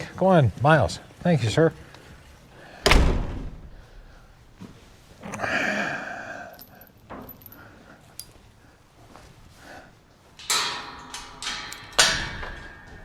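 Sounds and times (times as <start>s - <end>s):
metallic jingles: 6.5s - 8.5s, 10.3s - 13.0s.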